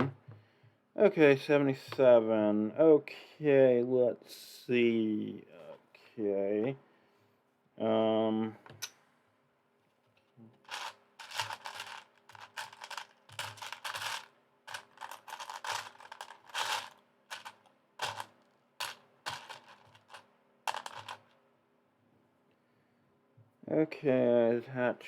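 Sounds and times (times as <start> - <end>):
plastic bricks clattering: 10.6 - 21.3.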